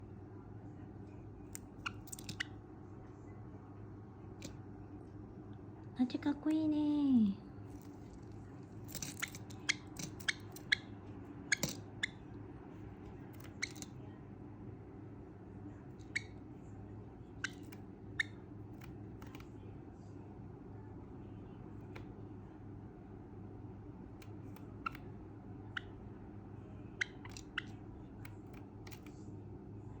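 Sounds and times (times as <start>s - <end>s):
low steady hum: 0.0s - 30.0s
sparrow clicking: 1.4s - 2.5s, 8.9s - 10.9s, 11.5s - 12.2s, 13.3s - 13.9s, 17.4s - 19.5s, 27.0s - 29.2s.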